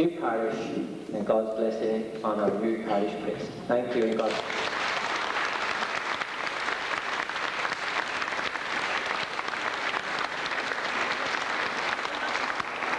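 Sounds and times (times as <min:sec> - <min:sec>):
congregation applauding: 0:02.9 - 0:12.9.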